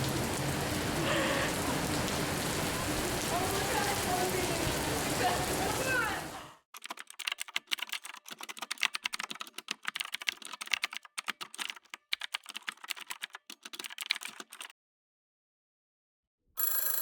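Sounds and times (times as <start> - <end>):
rapid keyboard typing: 6.8 - 14.7.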